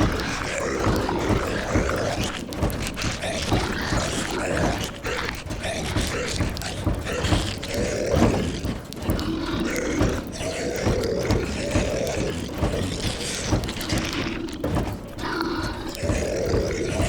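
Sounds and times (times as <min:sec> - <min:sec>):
zombie moans and growls: 0:00.0 - 0:17.0.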